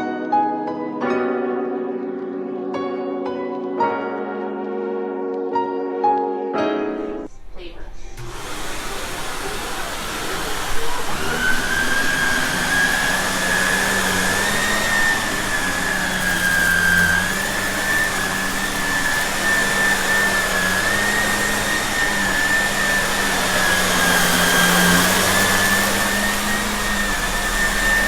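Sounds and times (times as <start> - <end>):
vacuum cleaner running: 8.1 - 28.0.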